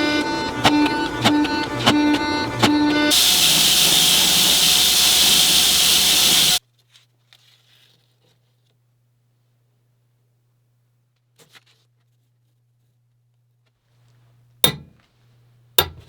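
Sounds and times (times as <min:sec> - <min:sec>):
loud steady hiss: 0:03.1 - 0:06.6.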